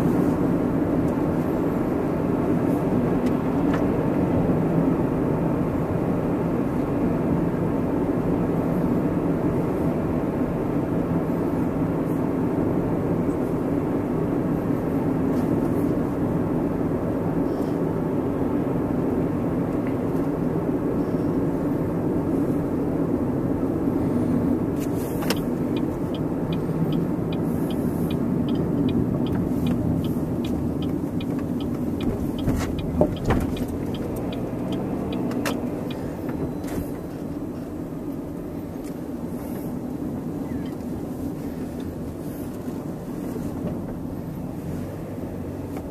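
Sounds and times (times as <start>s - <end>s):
car engine and road noise: 0.0s - 45.9s
light ticking: 25.4s - 36.0s.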